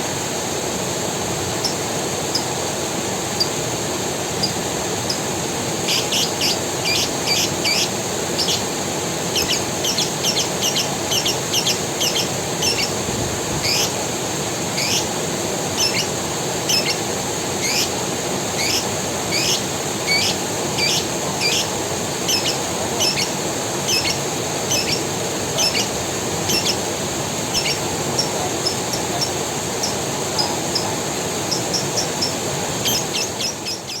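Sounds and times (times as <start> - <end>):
creek water running: 0.0 - 34.0
bird chirping: 5.9 - 8.7, 9.3 - 13.0, 13.6 - 13.9, 14.8 - 15.1, 15.8 - 16.1, 16.7 - 17.0, 17.6 - 17.9, 18.6 - 26.8, 27.5 - 34.0.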